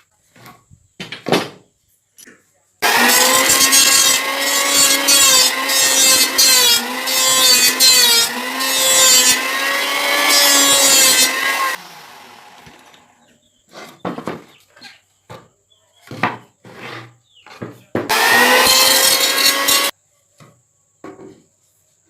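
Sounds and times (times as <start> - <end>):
power saw cutting wood: 2.8 - 13.2, 18.1 - 19.9.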